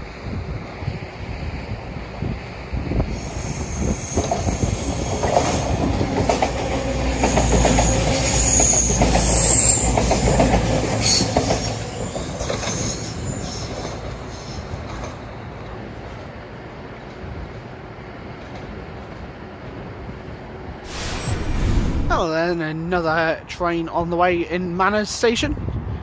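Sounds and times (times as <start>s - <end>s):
train running on rails: 0.0s - 22.2s
high-pitched wheel squeal: 3.2s - 6.0s, 7.1s - 10.2s, 11.0s - 14.8s
clickety-clack of wheels: 4.4s - 14.1s.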